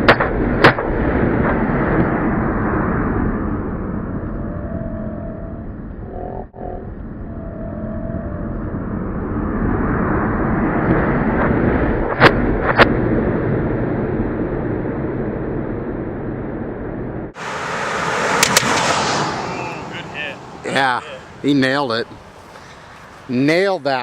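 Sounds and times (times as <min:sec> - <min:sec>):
car driving past at speed: 0:17.4 - 0:21.5.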